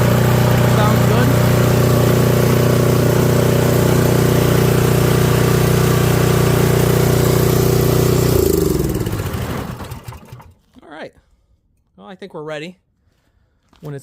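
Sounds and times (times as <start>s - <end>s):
snowblower engine running: 0.0s - 10.6s.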